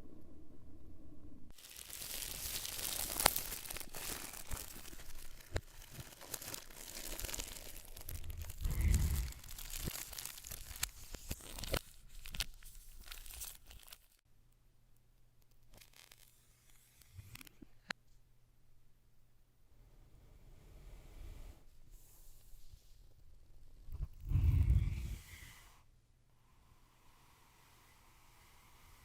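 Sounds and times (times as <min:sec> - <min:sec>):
packaging tearing and crinkling: 0:01.5 - 0:14.2, 0:15.7 - 0:16.4.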